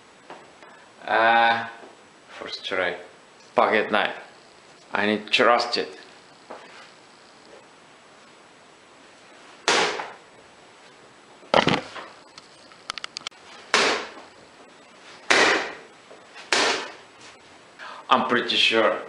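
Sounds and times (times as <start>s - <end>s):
knife striking wooden target: 13.7s - 14.2s, 15.3s - 15.8s, 16.5s - 17.0s.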